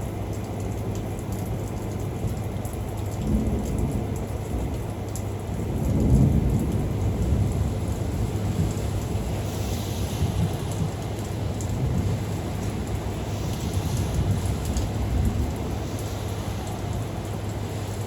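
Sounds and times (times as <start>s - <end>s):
rain falling: 0.0s - 18.0s
thunder rumbling: 5.5s - 18.0s.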